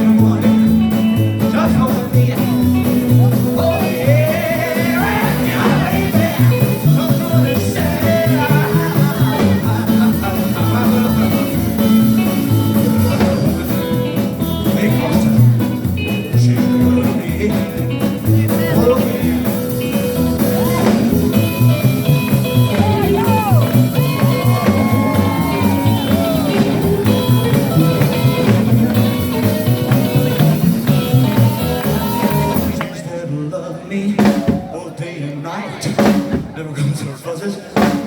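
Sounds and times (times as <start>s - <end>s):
live rockabilly band playing: 0.0s - 35.0s, 35.6s - 38.0s.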